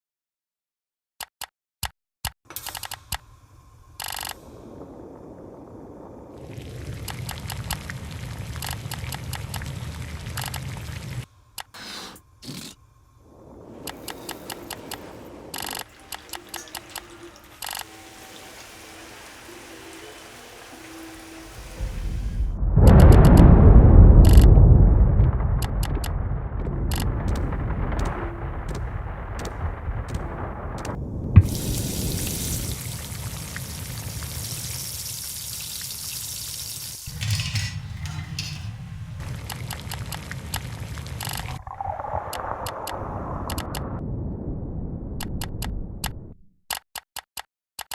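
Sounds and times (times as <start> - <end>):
sharp clicks: 1.2 - 3.2, 28.0 - 30.2, 46.7 - 47.9
steady hiss: 2.6 - 22.6, 31.4 - 41.6
low rumble: 3.2 - 11.6, 12.3 - 16.4, 21.2 - 34.2, 37.1 - 46.5.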